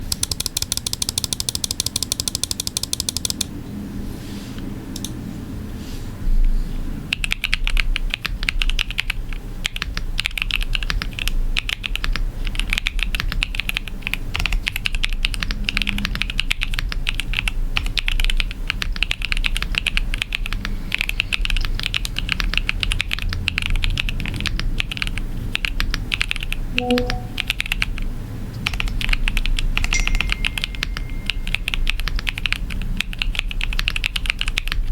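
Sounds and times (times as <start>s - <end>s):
mechanical keyboard typing: 0.0s - 3.5s, 7.1s - 34.9s
short patterned sound: 26.7s - 27.6s.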